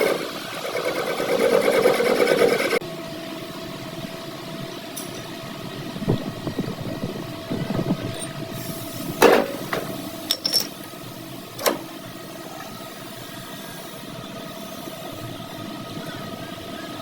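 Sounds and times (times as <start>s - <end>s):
steady machine hum: 0.0s - 17.0s
metal knocks and clinks: 5.0s - 5.3s, 8.1s - 8.4s, 9.2s - 10.9s.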